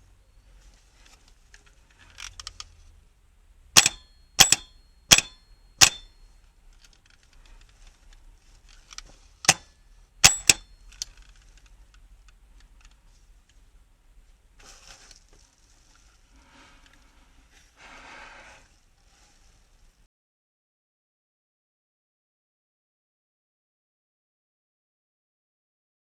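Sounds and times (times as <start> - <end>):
faint handling noise: 0.0 - 3.1, 3.8 - 20.1
metallic clinks: 3.8 - 6.4, 10.2 - 11.3.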